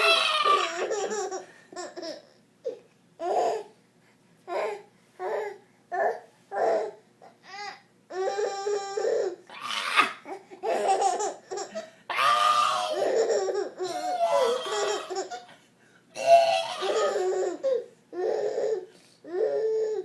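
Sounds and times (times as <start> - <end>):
young child laughing and squealing: 9.6 - 10.3, 12.1 - 15.4.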